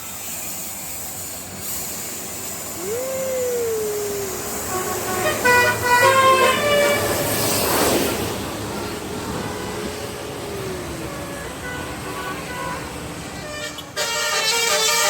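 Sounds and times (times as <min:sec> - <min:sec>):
vehicle passing by: 0:02.6 - 0:13.5
multi-tone air horn: 0:04.2 - 0:07.6, 0:09.3 - 0:15.0.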